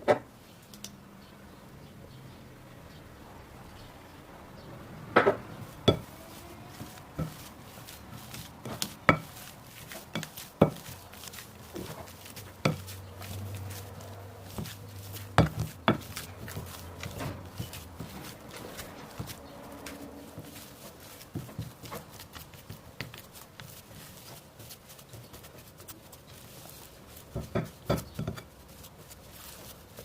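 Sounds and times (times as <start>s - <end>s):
utensils clinking against dishes: 5.3s - 7.5s.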